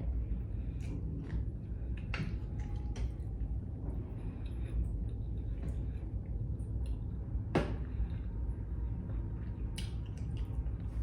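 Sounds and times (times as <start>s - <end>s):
steady low hum: 0.0s - 11.0s
wet mouth eating noises: 9.4s - 11.0s.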